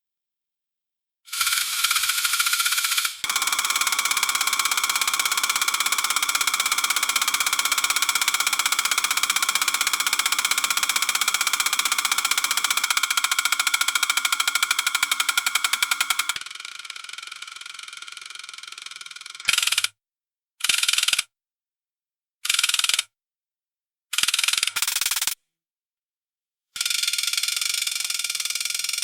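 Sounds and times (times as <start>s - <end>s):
electric saw motor whining: 3.2s - 16.4s.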